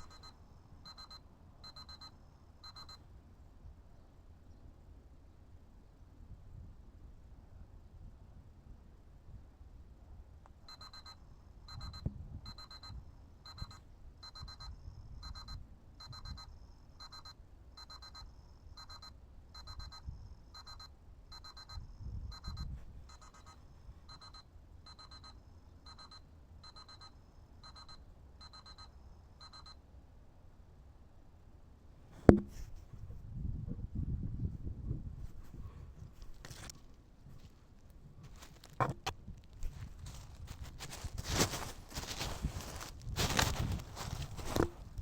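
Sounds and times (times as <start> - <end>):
electronic alarm beeping: 0.0 - 3.0, 10.7 - 29.8
dull thuds: 32.2 - 32.8.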